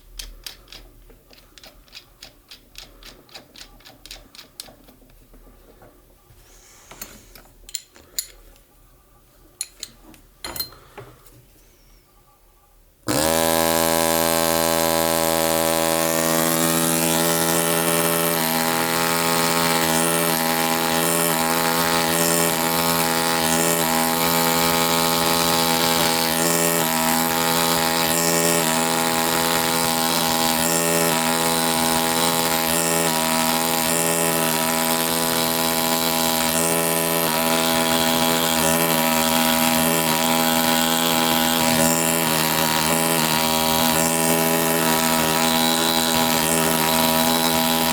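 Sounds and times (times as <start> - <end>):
pneumatic air scribe buzzing: 13.1 - 47.9.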